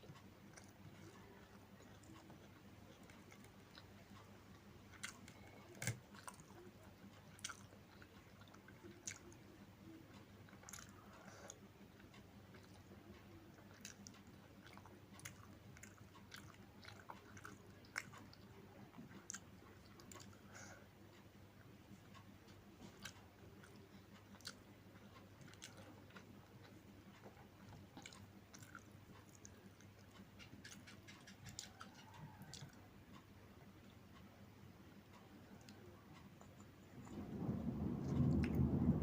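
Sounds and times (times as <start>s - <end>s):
faint steady hum: 0.0s - 39.0s
person chewing: 0.1s - 9.4s, 10.4s - 20.8s, 22.8s - 32.8s.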